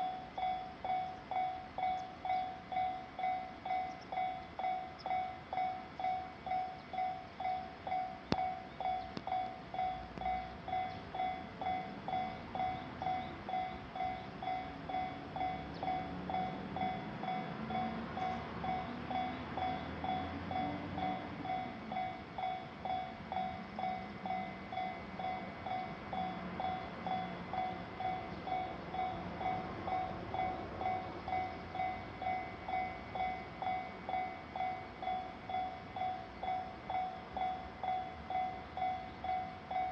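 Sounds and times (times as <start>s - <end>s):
level crossing warning bell: 0.0s - 39.9s
train rumbling past: 0.0s - 39.9s.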